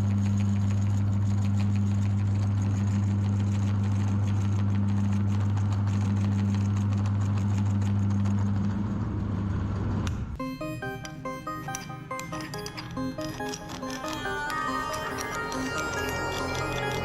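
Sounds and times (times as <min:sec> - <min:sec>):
meat grinder motor humming: 0:00.0 - 0:10.0, 0:12.1 - 0:17.0
music: 0:10.4 - 0:17.0.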